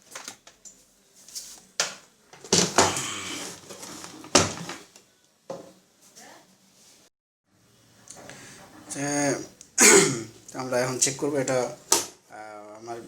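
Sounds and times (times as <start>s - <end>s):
hard objects clattering: 2.4s - 4.9s.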